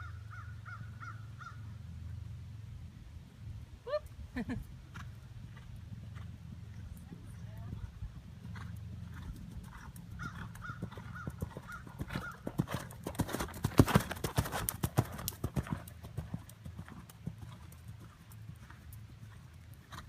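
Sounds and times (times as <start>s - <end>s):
horse hoofbeats: 8.5s - 20.0s.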